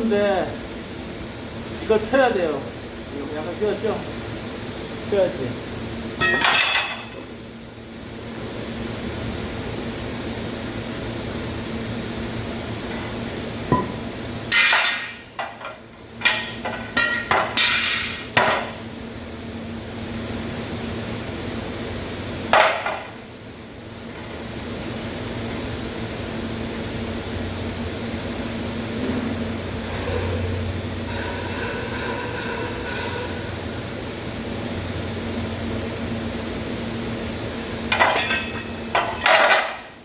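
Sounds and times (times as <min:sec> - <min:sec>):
steady background hum: 0:00.0 - 0:40.0
hammer striking steel: 0:13.7 - 0:15.2, 0:16.2 - 0:18.2, 0:31.1 - 0:33.6.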